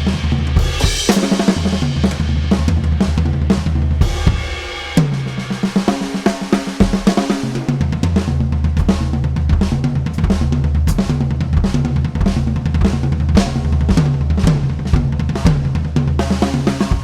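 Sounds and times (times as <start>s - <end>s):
drum kit groove: 0.0s - 17.0s
bass line: 7.6s - 17.0s.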